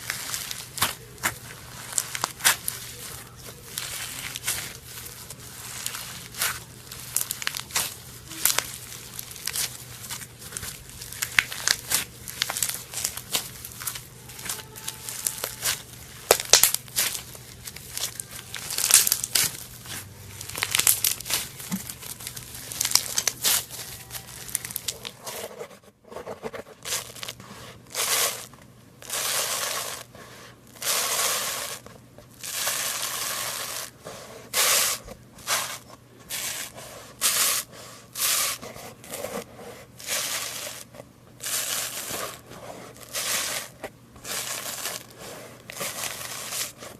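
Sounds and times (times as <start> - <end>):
slime popping and crackling: 0.0 - 25.2
slime squelching: 0.0 - 25.6, 30.7 - 46.9.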